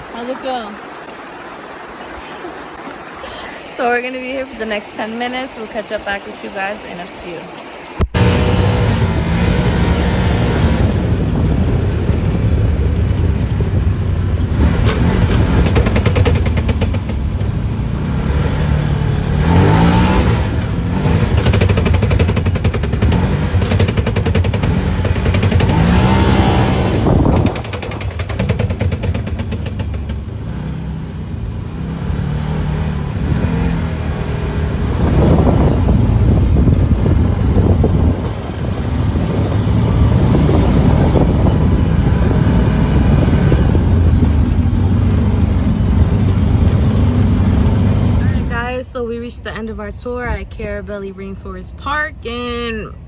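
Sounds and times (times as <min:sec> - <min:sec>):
utility vehicle engine accelerating: 0:08.0 - 0:48.8.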